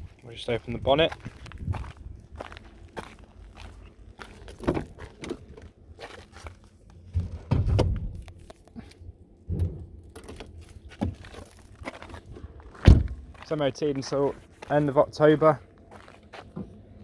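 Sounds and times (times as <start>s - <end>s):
footsteps: 10.6s - 16.8s
low thumps: 12.8s - 13.4s.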